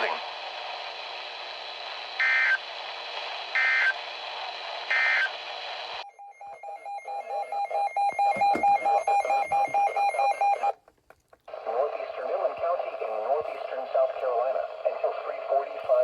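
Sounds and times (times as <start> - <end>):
radio hiss: 0.0 - 6.0, 11.5 - 16.0.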